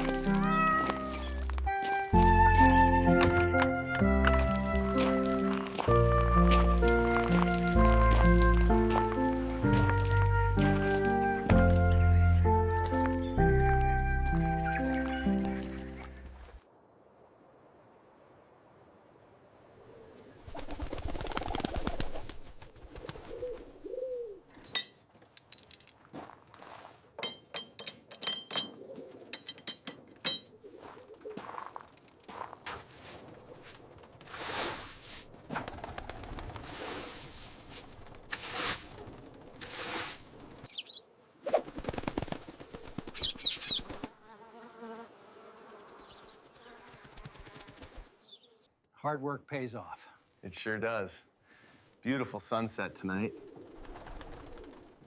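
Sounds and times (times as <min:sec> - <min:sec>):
birds flapping wings: 0:20.4 - 0:23.9, 0:35.4 - 0:40.7, 0:41.5 - 0:44.2, 0:45.7 - 0:48.2, 0:53.3 - 0:55.0
bird cooing: 0:23.3 - 0:24.5.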